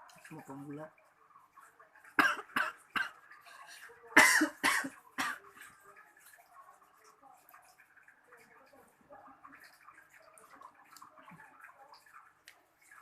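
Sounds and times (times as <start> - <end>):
person coughing: 4.2 - 5.4.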